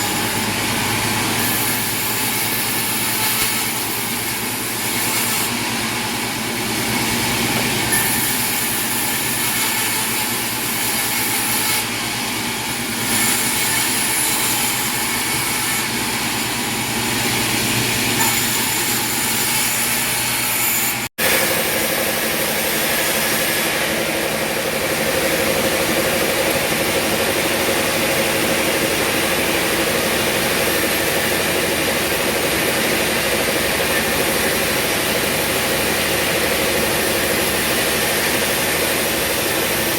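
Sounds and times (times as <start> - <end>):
sawmill machinery running: 0.0 - 39.9
steady machine whine: 11.8 - 39.9.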